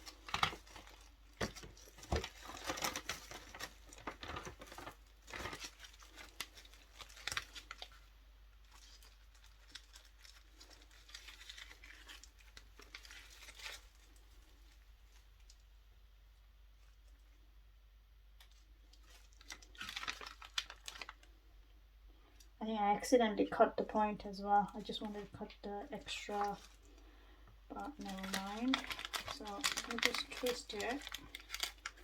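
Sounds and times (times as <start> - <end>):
wet wipes packet crinkling: 0.0 - 15.9, 18.4 - 21.5, 23.8 - 32.0.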